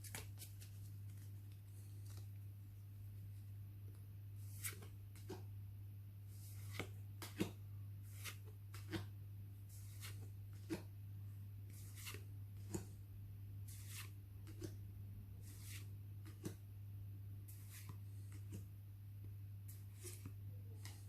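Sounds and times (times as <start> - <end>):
cards sliding and tapping: 6.4 - 9.1, 11.7 - 13.0, 15.4 - 16.6, 17.5 - 18.7, 19.7 - 21.0.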